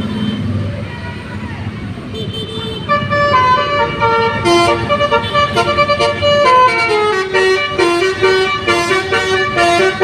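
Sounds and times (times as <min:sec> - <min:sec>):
bus horn playing a tune: 0:02.2 - 0:10.0.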